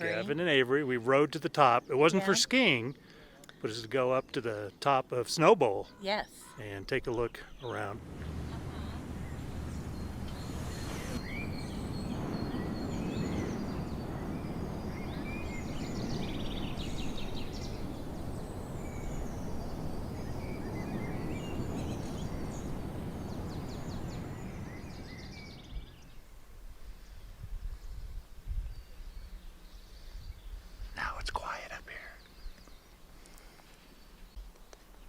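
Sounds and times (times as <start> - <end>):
small birds chirping: 5.7 - 26.4, 27.0 - 35.0
low rushing noise: 7.6 - 26.4.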